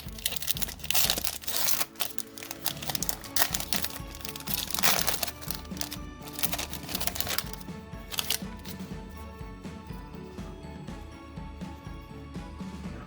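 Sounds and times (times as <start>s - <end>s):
foil wrapper crinkling and tearing: 0.0s - 8.9s
background music: 0.0s - 13.0s.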